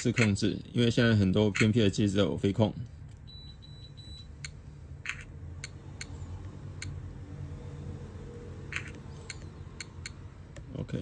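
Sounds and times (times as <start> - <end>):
low steady hum: 0.0 - 11.0
transmitter controls clicking: 8.7 - 10.7.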